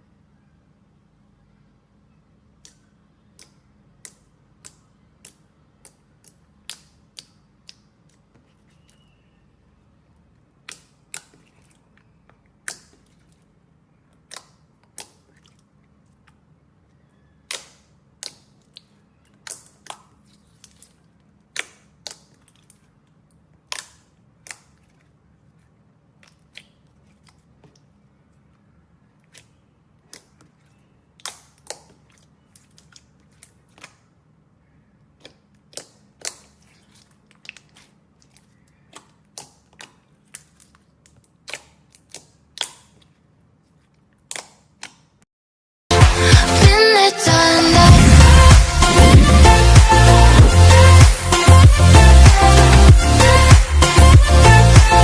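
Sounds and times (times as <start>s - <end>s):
faint low hum: 0.0s - 41.2s
slime clicking and popping: 2.6s - 8.3s, 10.6s - 13.4s, 17.4s - 25.1s, 31.2s - 34.0s, 35.2s - 43.2s.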